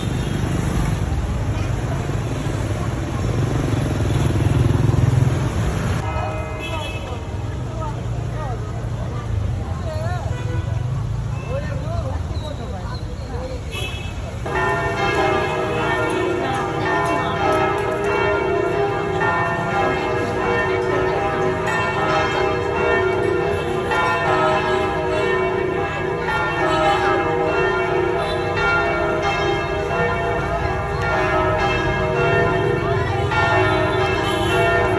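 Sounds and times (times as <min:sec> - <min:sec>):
church bells pealing: 0:06.0 - 0:07.5, 0:14.5 - 0:34.9.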